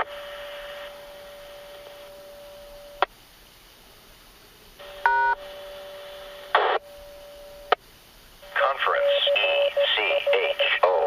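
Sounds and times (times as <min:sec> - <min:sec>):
burst of static: 0:00.0 - 0:03.1, 0:04.8 - 0:06.9, 0:08.4 - 0:11.0
faint steady hum: 0:00.0 - 0:11.0.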